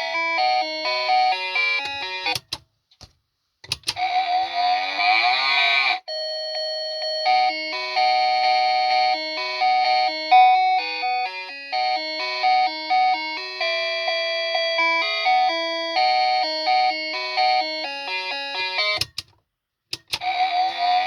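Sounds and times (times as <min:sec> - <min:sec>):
alarm clock clicks: 0:00.0 - 0:02.6, 0:14.6 - 0:19.3, 0:20.0 - 0:21.0.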